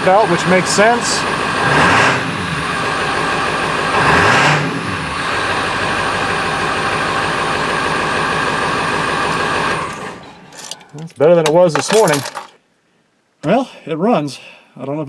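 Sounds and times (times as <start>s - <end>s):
diesel engine idling: 0.0s - 10.2s.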